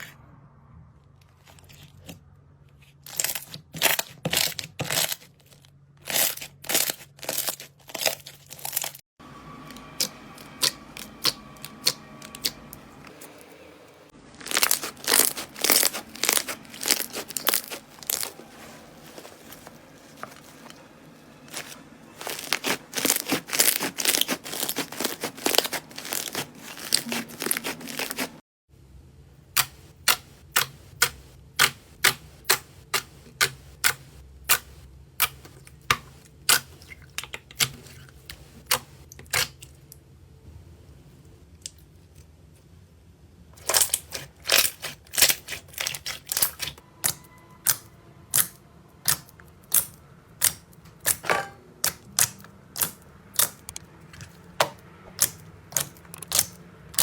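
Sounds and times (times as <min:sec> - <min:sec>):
slime crackling and popping: 0:14.3 - 0:18.7, 0:21.5 - 0:28.4, 0:43.6 - 0:51.2, 0:51.8 - 0:54.3, 0:55.2 - 0:57.0.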